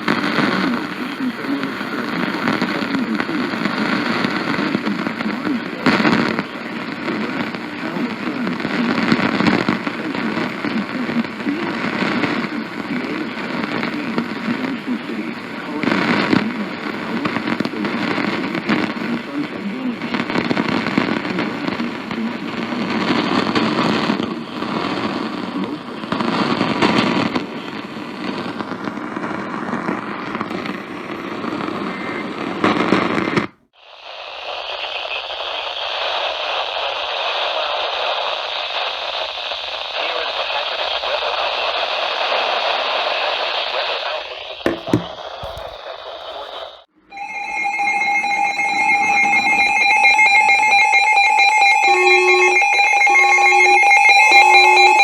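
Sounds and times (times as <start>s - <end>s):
radio static hiss: 0.0s - 50.8s, 51.7s - 55.0s
crackling noise: 0.0s - 55.0s
electronic alert tones: 47.1s - 55.0s.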